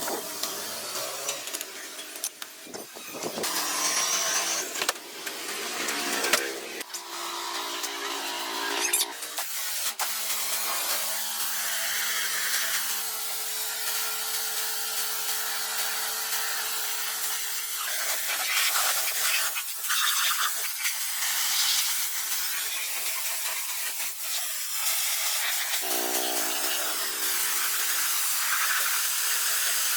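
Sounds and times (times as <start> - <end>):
tool scraping a surface: 25.6 - 29.5.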